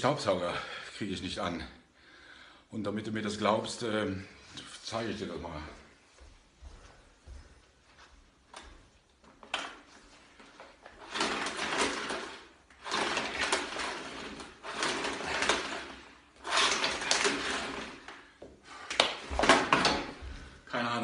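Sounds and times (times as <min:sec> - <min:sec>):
vacuum cleaner rattling bursts: 0:10.7 - 0:20.5.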